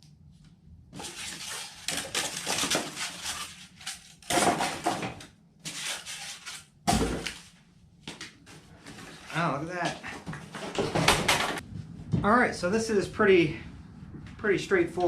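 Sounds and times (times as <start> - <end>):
packaging rustling and crinkling: 1.0 - 5.1, 5.7 - 7.5.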